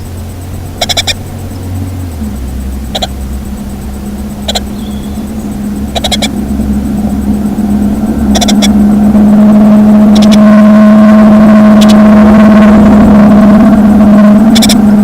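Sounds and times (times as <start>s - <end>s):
low motor hum with whine: 0.0s - 15.0s
high bird chirps: 0.7s - 10.6s, 14.4s - 14.9s.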